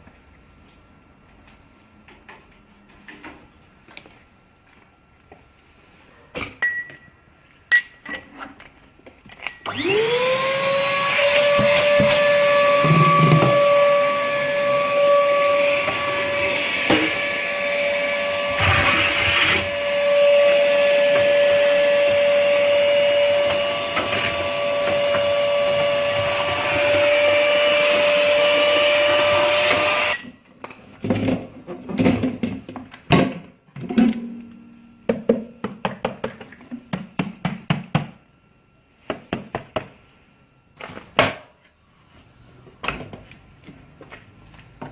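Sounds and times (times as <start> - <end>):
vacuum cleaner motor whine: 9.6 - 31.3.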